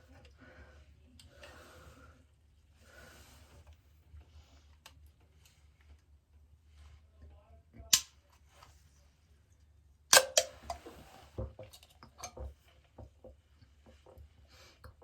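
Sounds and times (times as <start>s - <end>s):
can pull tab popping open: 10.1s - 10.8s.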